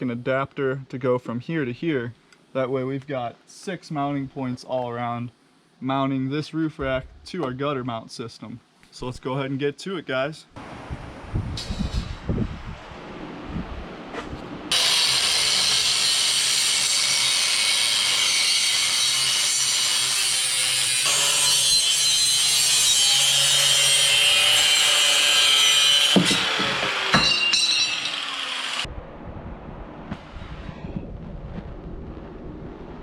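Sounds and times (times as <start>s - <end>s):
angle grinder cutting metal: 14.7s - 28.9s.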